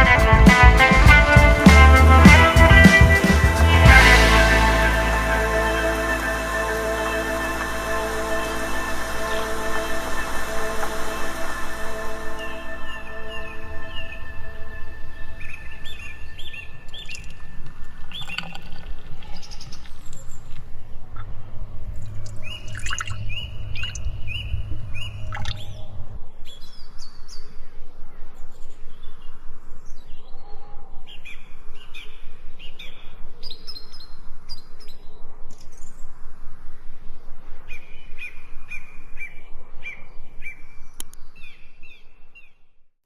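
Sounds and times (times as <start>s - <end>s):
birds chirping: 1.9s - 18.5s.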